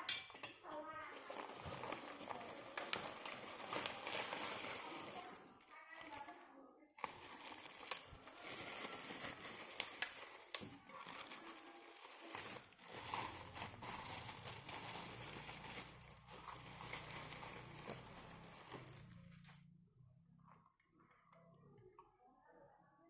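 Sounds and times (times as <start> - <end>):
packaging crinkling and rustling: 1.0 - 6.4, 7.0 - 19.6.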